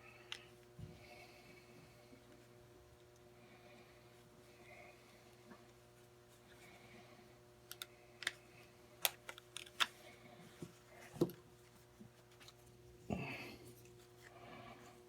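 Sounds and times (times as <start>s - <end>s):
faint steady hum: 0.0s - 15.0s
light clicks of parts being fitted: 7.7s - 8.4s.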